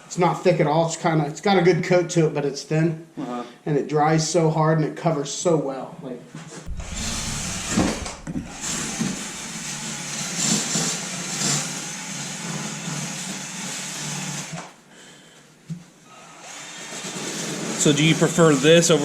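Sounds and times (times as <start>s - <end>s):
machine motor running: 6.7s - 10.7s.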